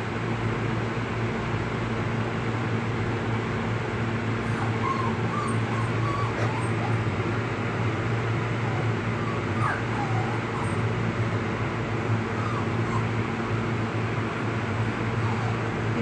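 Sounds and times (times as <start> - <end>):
low mechanical hum: 0.0 - 16.0
dog whimpering: 4.3 - 16.0.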